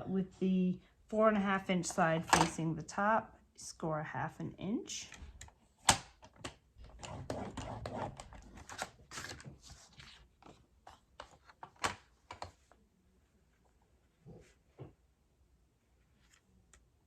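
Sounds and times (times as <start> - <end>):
scoring tool clicking and scraping: 5.4 - 9.4.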